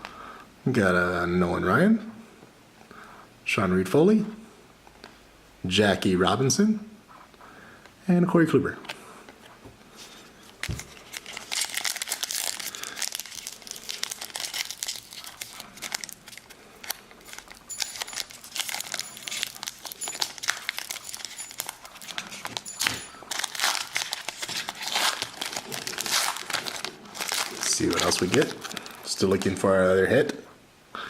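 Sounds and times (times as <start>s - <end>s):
foil wrapper crinkling and tearing: 10.6s - 29.7s.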